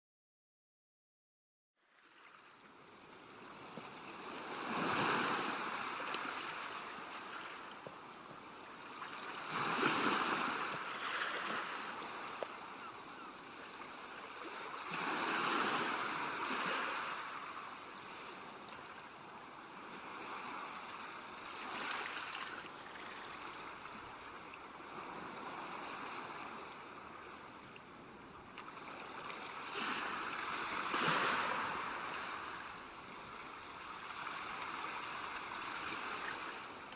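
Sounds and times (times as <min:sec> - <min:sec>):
ocean waves breaking: 0:03.6 - 0:08.0, 0:08.7 - 0:24.2, 0:28.7 - 0:36.9.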